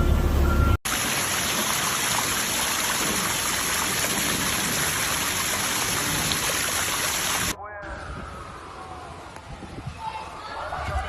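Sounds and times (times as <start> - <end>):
rushing floodwater: 0.9 - 7.6.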